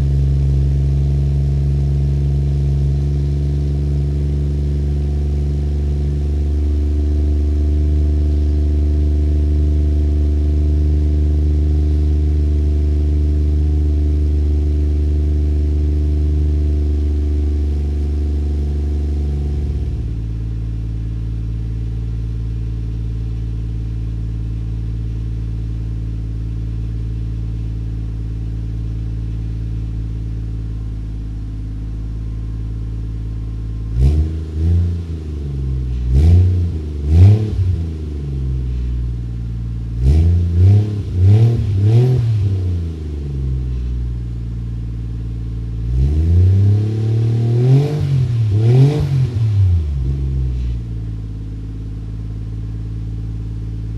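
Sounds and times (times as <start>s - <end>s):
turbo engine idling: 0.0s - 45.9s, 49.4s - 53.9s
engine revving: 33.7s - 38.8s, 39.9s - 43.8s, 45.8s - 50.8s.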